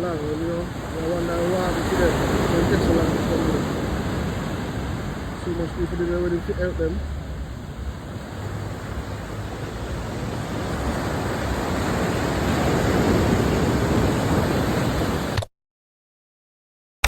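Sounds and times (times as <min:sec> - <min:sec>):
surf at the seashore: 0:00.0 - 0:15.5
wind: 0:00.0 - 0:15.5.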